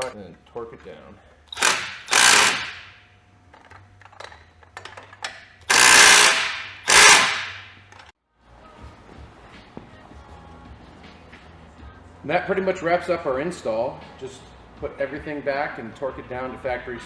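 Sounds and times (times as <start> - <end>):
impact wrench bursts: 1.5 - 3.1, 4.2 - 8.1.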